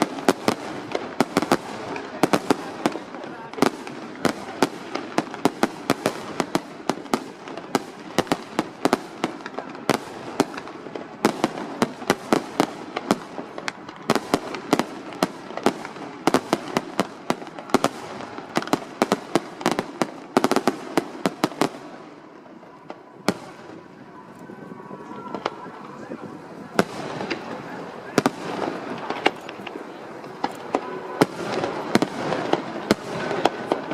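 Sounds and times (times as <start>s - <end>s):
fireworks bursts and bangs: 0.0s - 33.9s.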